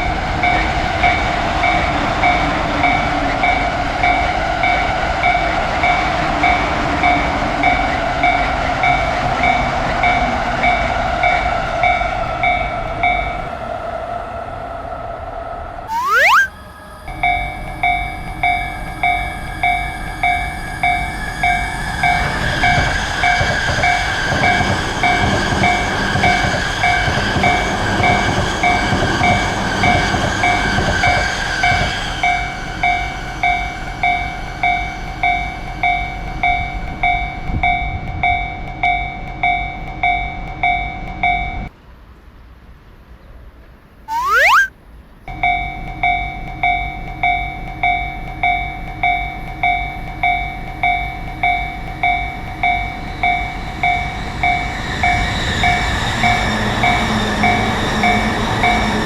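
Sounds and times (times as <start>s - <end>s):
rising whistle-like sweep: 15.9s - 16.9s, 44.1s - 44.7s
train rumble: 16.5s - 39.8s.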